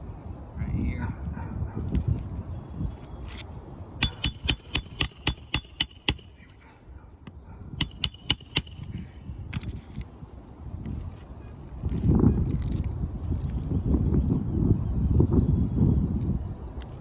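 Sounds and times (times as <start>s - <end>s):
hammer striking roofing nails: 4.0s - 6.5s, 7.8s - 9.1s.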